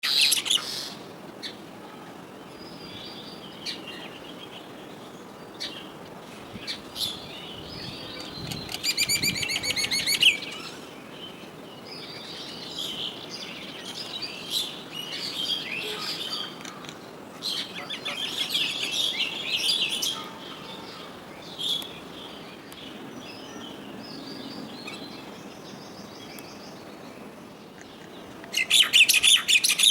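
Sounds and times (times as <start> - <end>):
mynas chirping and chattering: 6.6 - 10.9, 14.6 - 22.2.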